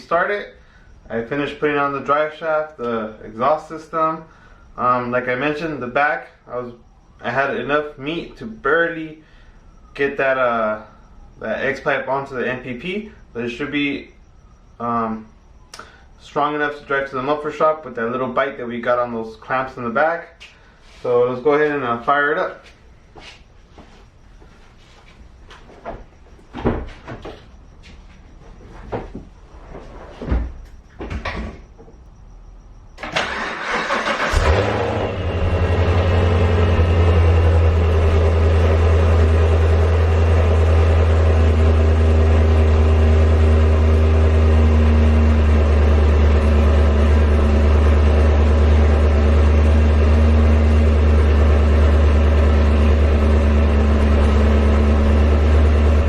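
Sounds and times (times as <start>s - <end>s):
car engine cranking and idling: 32.9s - 56.0s.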